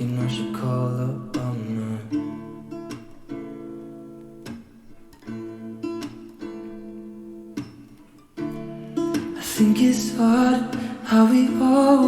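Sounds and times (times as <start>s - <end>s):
person singing pop song: 0.0s - 2.6s, 9.1s - 12.0s
strummed acoustic guitar: 0.0s - 12.0s.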